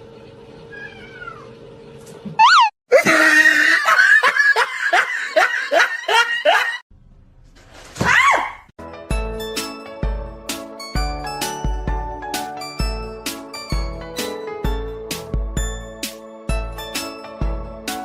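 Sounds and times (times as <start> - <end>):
cat meowing and yowling: 0.7 - 1.5.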